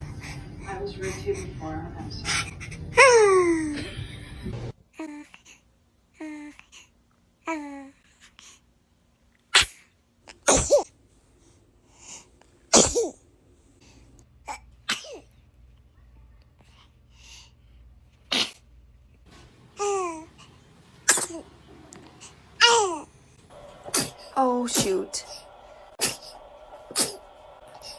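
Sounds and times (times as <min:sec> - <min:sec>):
baby babbling coos: 0:07.5 - 0:08.0, 0:19.8 - 0:20.3, 0:22.6 - 0:23.1
baby sneezing: 0:09.5 - 0:10.9, 0:12.7 - 0:13.1, 0:14.9 - 0:15.2, 0:18.2 - 0:18.6, 0:21.1 - 0:21.4, 0:23.9 - 0:25.0, 0:26.0 - 0:26.3, 0:26.9 - 0:27.2.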